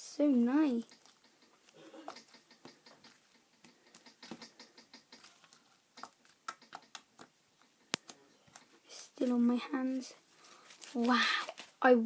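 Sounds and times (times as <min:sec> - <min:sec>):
slime clicking and crackling: 0:00.7 - 0:08.7.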